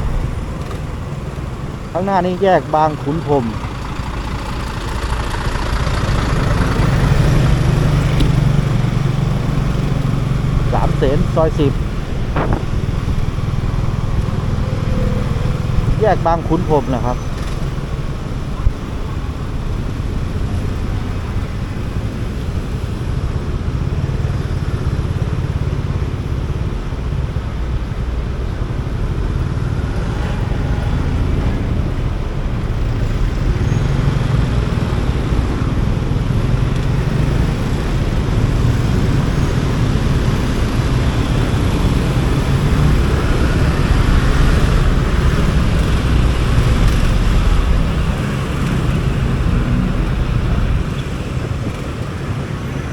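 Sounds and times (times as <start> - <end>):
motorcycle engine running: 0.0 - 16.5
traffic noise: 0.0 - 52.9
wind rushing on microphone: 6.6 - 33.7.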